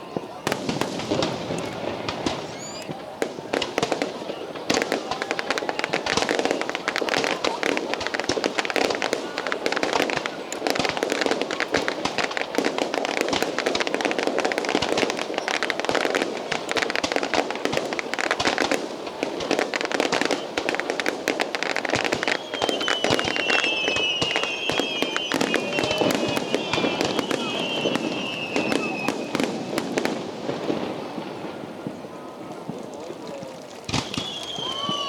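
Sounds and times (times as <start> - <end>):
fireworks crackling and banging: 0.0 - 35.0
high wavering whistle: 2.5 - 2.9, 22.2 - 29.2, 34.1 - 35.0.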